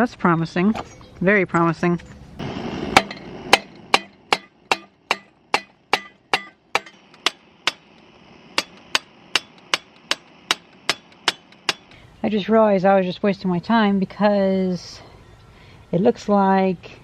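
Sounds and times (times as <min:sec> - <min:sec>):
hammer banging on metal: 0:03.0 - 0:08.0, 0:08.6 - 0:12.0.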